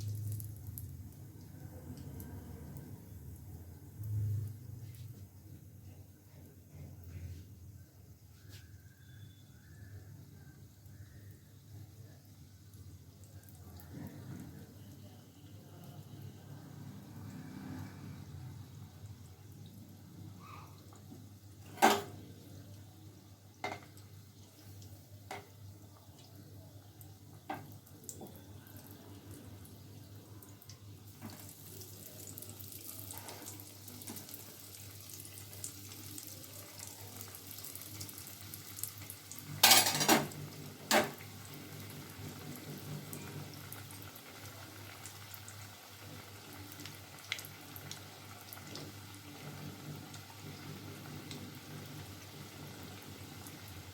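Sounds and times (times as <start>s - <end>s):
frying in hot oil sizzling: 0.0s - 53.9s.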